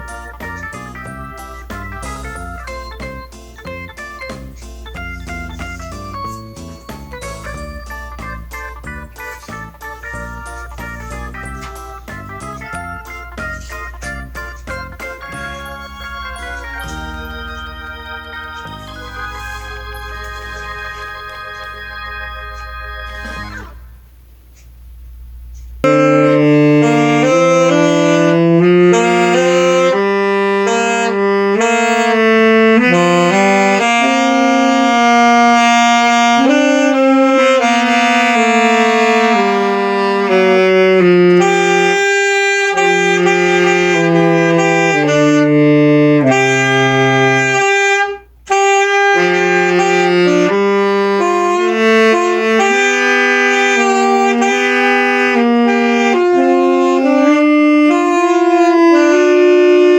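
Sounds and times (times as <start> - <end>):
saxophone playing slow melody: 0.0 - 23.8, 25.8 - 59.9
backing track with bass: 0.0 - 59.9.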